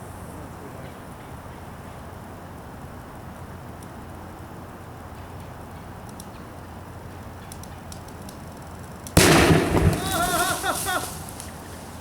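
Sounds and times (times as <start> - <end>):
low background noise: 0.0 - 12.0
faint clicks: 5.3 - 6.4.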